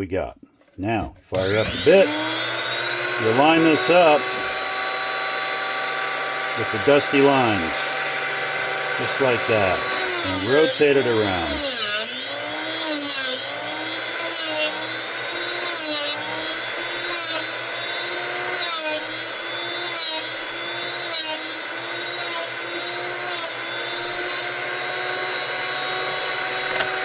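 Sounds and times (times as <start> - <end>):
motor hum: 1.3 - 12.8
grinding wheel rasping on drill bit: 1.3 - 27.0.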